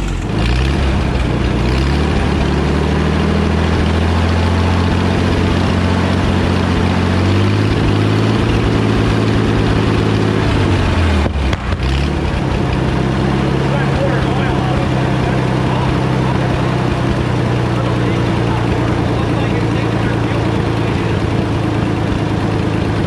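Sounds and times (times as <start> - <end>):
tractor engine hunting in speed: 0.0 - 23.0.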